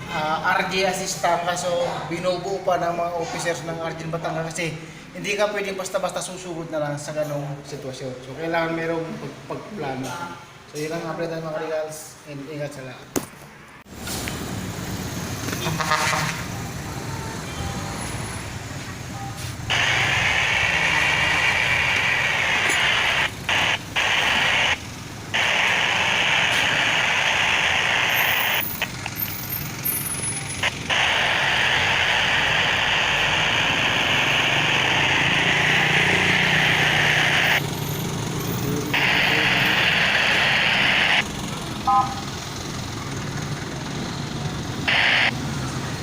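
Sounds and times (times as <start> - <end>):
radio static hiss: 19.6 - 29.4, 30.3 - 37.6, 38.7 - 41.3, 44.8 - 45.4.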